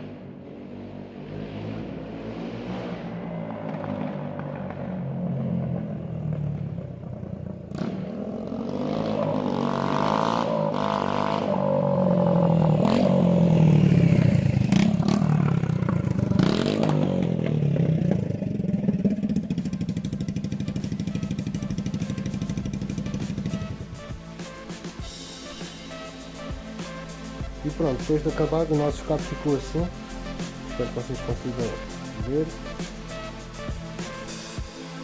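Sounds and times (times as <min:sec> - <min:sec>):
unsilenced motorcycle engine revving: 0:00.0 - 0:35.0.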